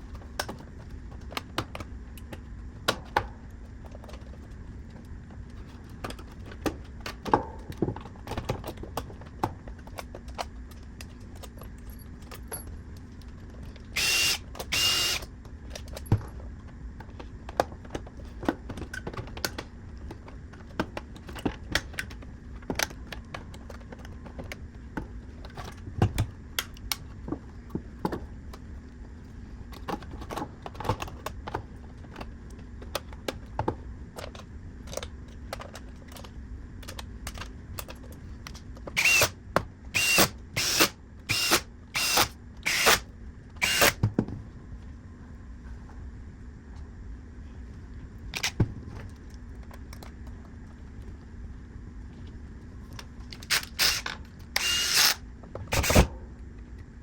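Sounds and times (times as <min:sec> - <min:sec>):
power screwdriver whirring: 0:14.0 - 0:15.3, 0:39.0 - 0:39.3, 0:40.0 - 0:43.0, 0:43.6 - 0:44.0, 0:53.4 - 0:56.1
small clicks of parts being handled: 0:29.7 - 0:39.2.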